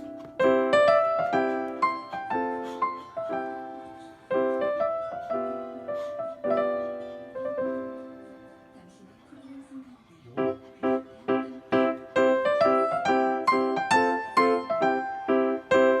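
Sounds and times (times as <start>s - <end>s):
gentle piano piece: 0.0s - 9.1s, 10.3s - 16.0s.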